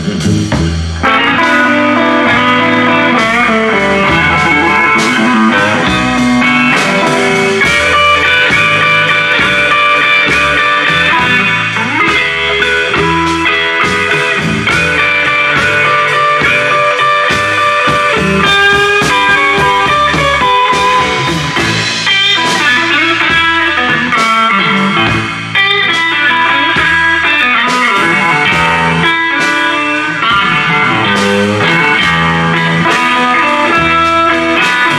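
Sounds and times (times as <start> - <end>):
double bass: 0.0 - 1.0, 2.3 - 9.6, 30.9 - 32.8
drum kit: 0.0 - 34.9
electric guitar lines: 0.0 - 34.9.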